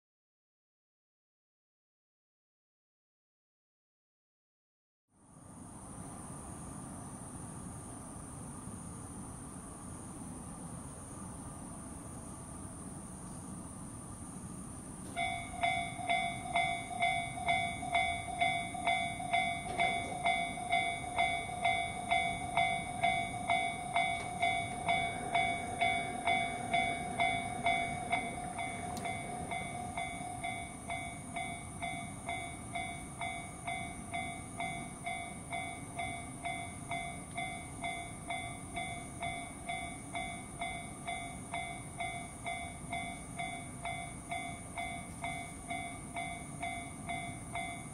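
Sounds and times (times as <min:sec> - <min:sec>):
railroad crossing warning bell: 0:15.0 - 0:47.9.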